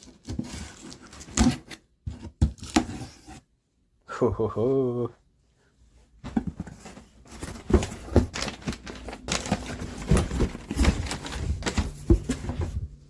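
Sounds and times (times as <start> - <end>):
cardboard box being cut and torn: 0.2 - 1.8.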